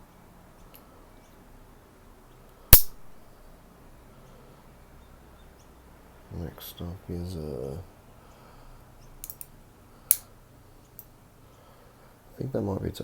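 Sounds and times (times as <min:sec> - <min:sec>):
faint ticks from handling tool: 0:09.2 - 0:09.5.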